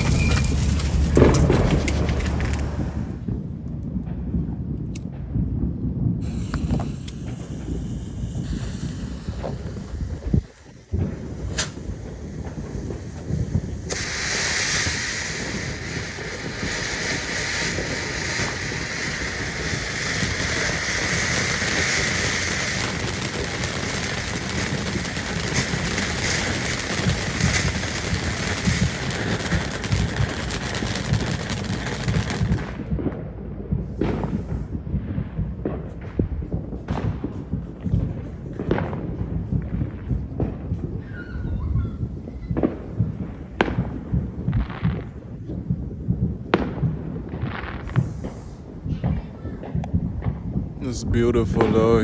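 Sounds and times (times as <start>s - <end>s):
firework hissing and crackling: 0.0s - 3.5s, 6.2s - 33.0s, 42.0s - 48.9s, 49.7s - 52.0s
firework bangs: 0.0s - 52.0s.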